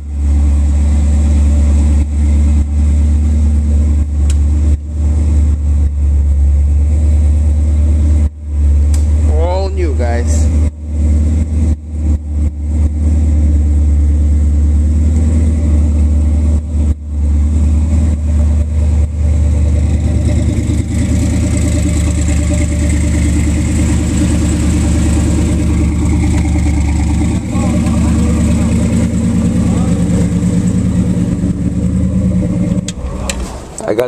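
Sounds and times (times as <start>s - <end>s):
car engine idling: 0.0s - 34.0s.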